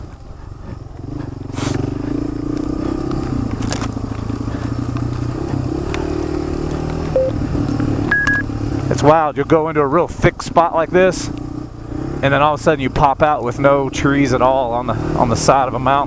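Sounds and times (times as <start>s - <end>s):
motorcycle engine running: 0.0s - 16.0s.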